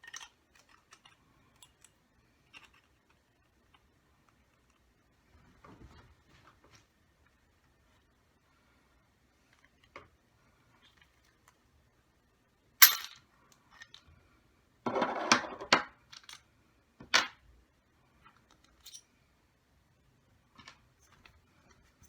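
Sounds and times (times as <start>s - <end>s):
metal parts clinking on surface: 0.0s - 2.9s, 12.8s - 13.2s, 18.6s - 19.0s.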